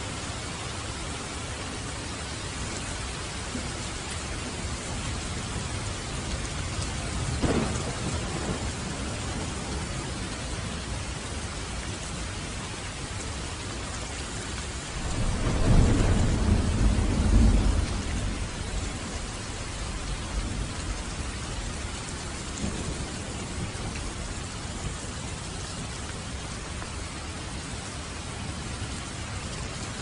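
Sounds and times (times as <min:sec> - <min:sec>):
steady rain falling: 0:00.0 - 0:30.0
thunder rumbling: 0:04.6 - 0:10.7, 0:14.9 - 0:25.4.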